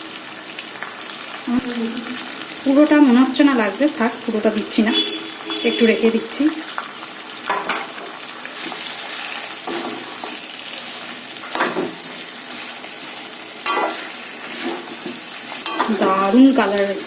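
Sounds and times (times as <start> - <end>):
chicken sizzling in oil: 0.0 - 17.0
spatula scraping a pan: 7.6 - 16.3.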